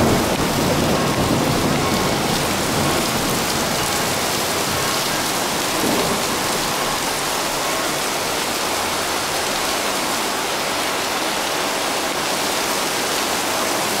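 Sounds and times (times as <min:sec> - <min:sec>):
heavy rain hissing: 0:00.0 - 0:14.0.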